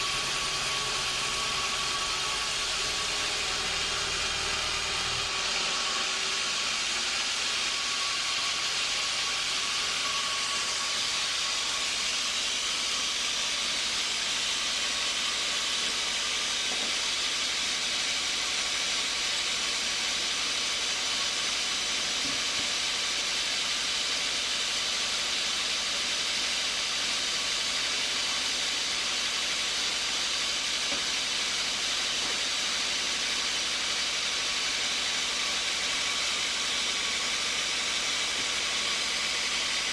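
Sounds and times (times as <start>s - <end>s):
sawmill machinery hissing: 0.0s - 39.9s.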